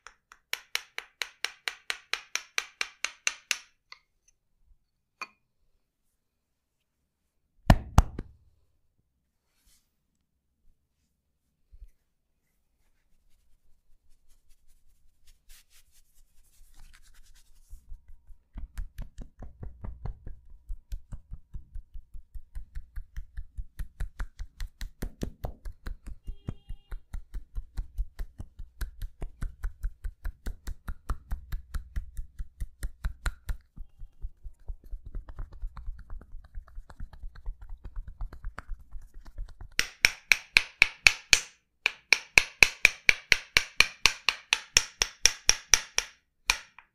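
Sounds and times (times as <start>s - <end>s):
percussive massage strikes: 0.0s - 3.8s, 7.7s - 8.4s, 18.5s - 46.9s.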